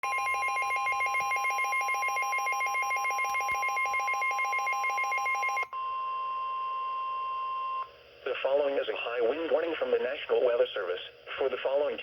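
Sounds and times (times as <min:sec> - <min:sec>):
rapidly pulsing beeps: 0:00.0 - 0:05.6.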